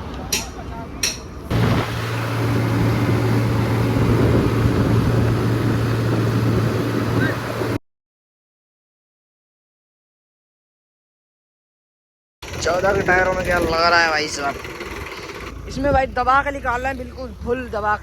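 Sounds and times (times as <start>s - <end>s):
tractor diesel engine running: 1.4s - 7.8s, 12.4s - 18.0s.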